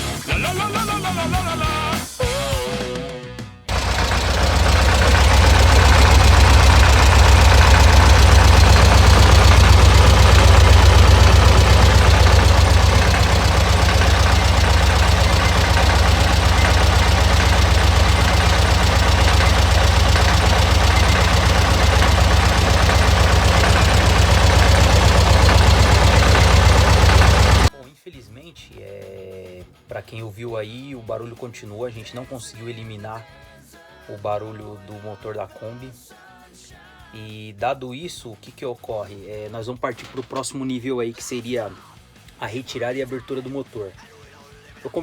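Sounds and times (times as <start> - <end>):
air-cooled engine running: 3.7 - 27.7.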